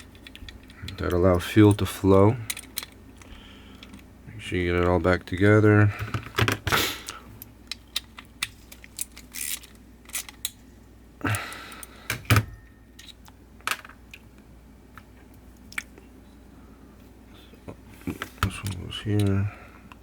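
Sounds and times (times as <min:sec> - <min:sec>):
small metal parts clicking: 0:00.0 - 0:04.0, 0:07.7 - 0:10.6.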